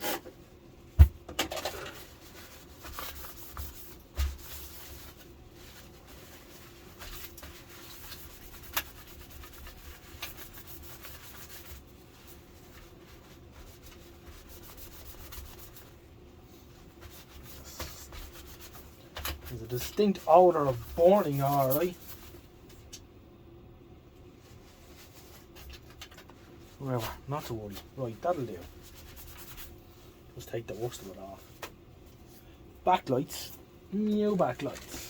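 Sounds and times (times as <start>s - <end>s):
cloth rubbing and wiping: 2.0s - 22.5s, 24.4s - 31.6s.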